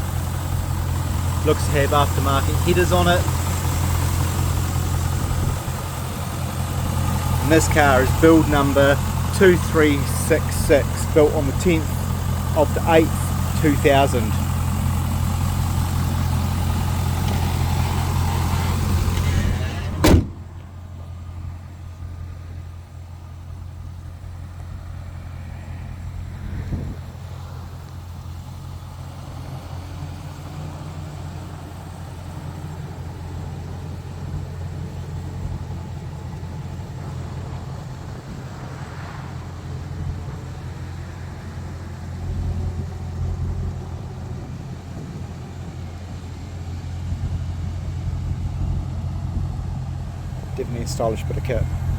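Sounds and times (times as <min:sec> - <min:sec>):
car engine idling: 0:00.0 - 0:51.9
loud slam: 0:19.3 - 0:20.5.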